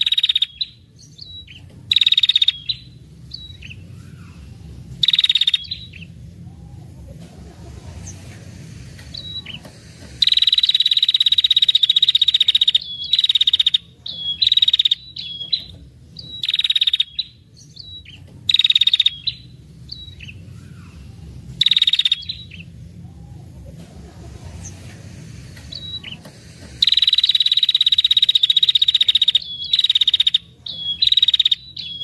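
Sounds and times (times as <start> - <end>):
bird chip notes: 0.0 - 32.0
bird rattling trill: 1.5 - 2.9, 9.1 - 19.5, 21.6 - 22.6, 25.7 - 32.0.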